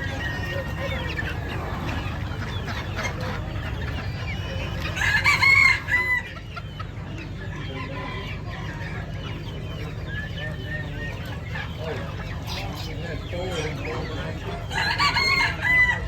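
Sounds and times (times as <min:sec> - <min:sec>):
chickens clucking: 0:00.0 - 0:16.0
rooster crowing: 0:05.0 - 0:06.3, 0:14.7 - 0:16.0.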